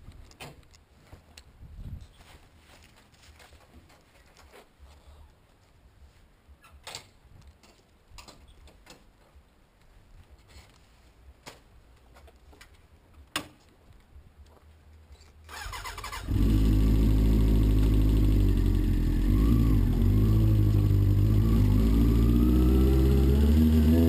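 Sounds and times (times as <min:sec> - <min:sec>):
motorcycle engine idling: 0:16.1 - 0:24.0.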